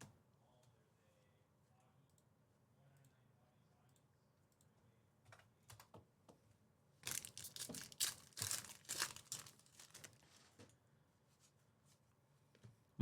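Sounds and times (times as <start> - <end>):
wrapper crinkling and tearing: 7.0 - 10.4.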